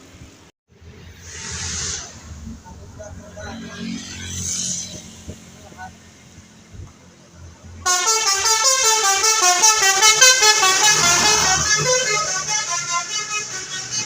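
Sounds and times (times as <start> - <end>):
musical bus horn: 7.9 - 14.0.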